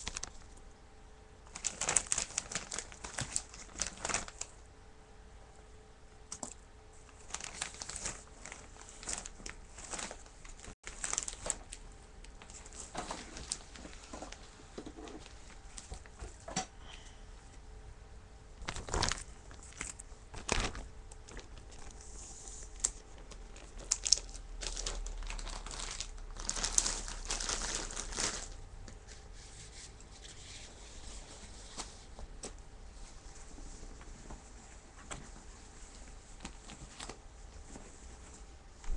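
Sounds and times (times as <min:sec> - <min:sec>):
plastic bag crinkling: 0:00.0 - 0:00.6, 0:01.5 - 0:04.6, 0:06.3 - 0:16.2, 0:18.6 - 0:28.6.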